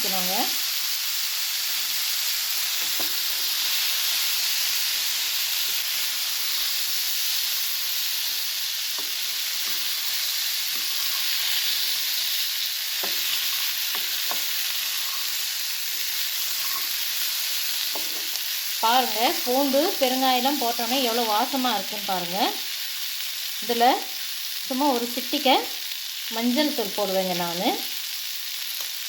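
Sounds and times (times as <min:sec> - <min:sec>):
oil sizzling in a pan: 0:00.0 - 0:29.0
spoon knocking against pan: 0:17.9 - 0:18.3.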